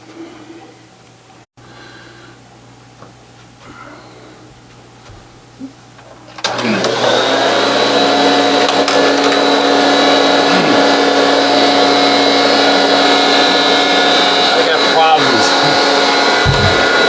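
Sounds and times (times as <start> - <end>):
vacuum cleaner motor whining: 5.6 - 17.0.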